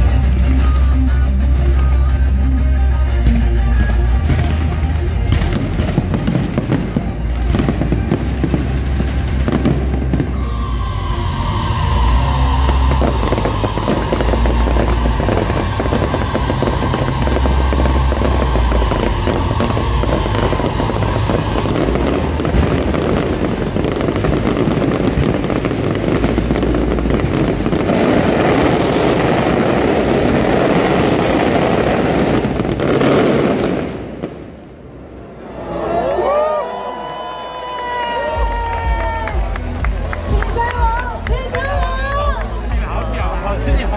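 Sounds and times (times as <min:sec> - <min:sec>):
fireworks crackling: 0:00.0 - 0:35.4, 0:36.0 - 0:43.9
fireworks booms: 0:03.8 - 0:35.4.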